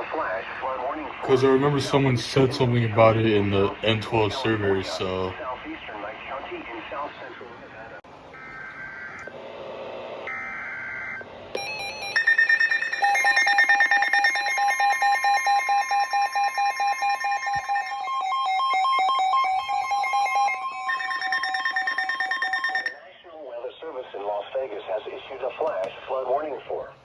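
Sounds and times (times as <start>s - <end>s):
steady alarm tone: 8.3s - 23.0s
data burst tones: 10.2s - 22.9s
alarm beeping in rapid pulses: 10.3s - 23.0s.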